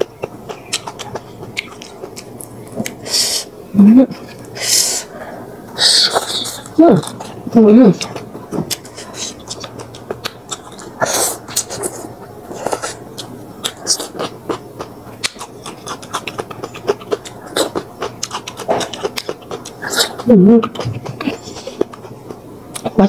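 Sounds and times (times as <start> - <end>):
wet mouth chewing smacks: 0.0 - 3.2, 8.0 - 23.0
crunchy bites: 8.0 - 23.0.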